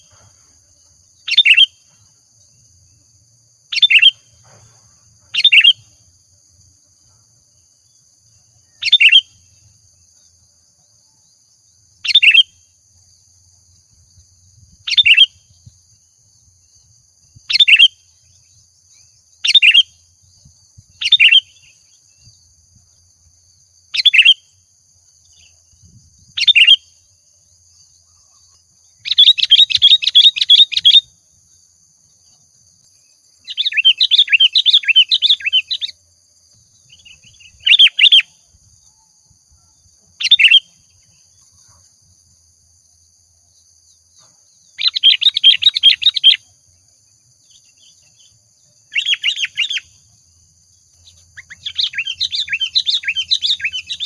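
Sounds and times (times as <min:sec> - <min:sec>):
bulbul chirping: 0:29.1 - 0:31.0, 0:51.1 - 0:54.0.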